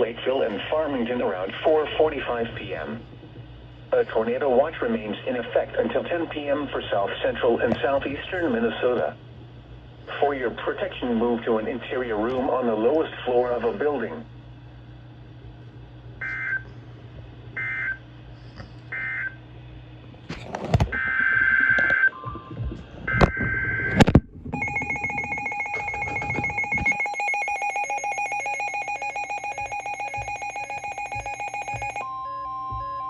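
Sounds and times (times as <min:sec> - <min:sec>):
data tone bursts: 0:21.0 - 0:32.0
pulsing two-tone alarm: 0:21.0 - 0:33.0.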